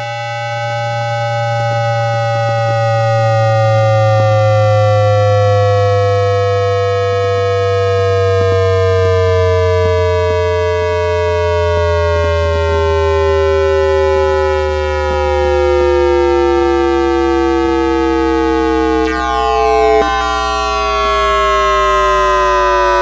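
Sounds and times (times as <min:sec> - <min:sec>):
whining tones gliding down: 0:00.0 - 0:23.0
steady low hum: 0:13.0 - 0:23.0.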